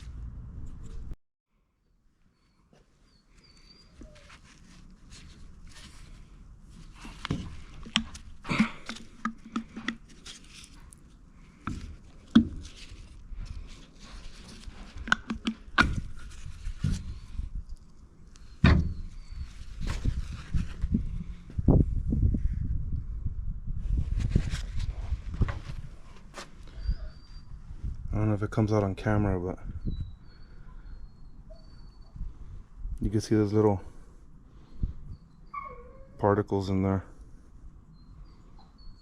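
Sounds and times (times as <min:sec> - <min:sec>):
tools clicking and knocking: 0:15.0 - 0:16.0.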